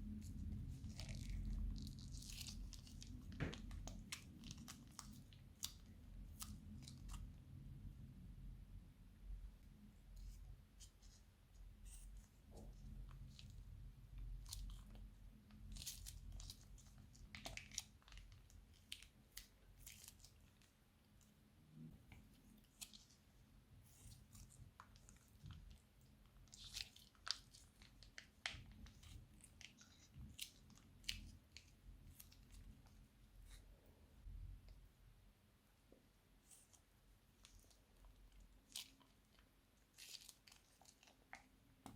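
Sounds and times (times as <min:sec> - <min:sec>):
slime crackling and crunching: 0:00.0 - 0:07.3, 0:13.1 - 0:20.7, 0:23.9 - 0:32.9, 0:37.4 - 0:41.9.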